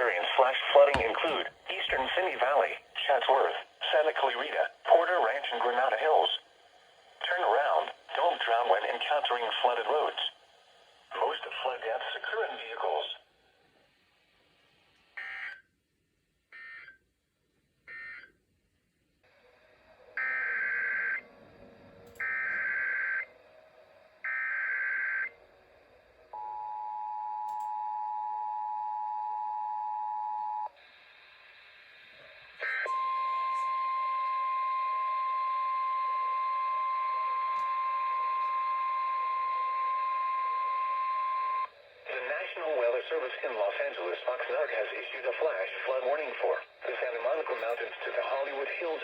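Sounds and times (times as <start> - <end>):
steady single-tone warning alarm: 20.2 - 21.3, 22.2 - 23.4, 24.2 - 25.4, 32.6 - 41.9
click: 27.5 - 27.7.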